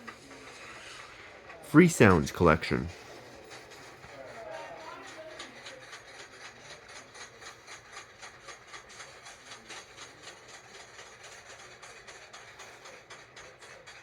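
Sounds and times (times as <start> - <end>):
roller coaster ratchet clicking: 0.0 - 1.5, 2.9 - 14.0.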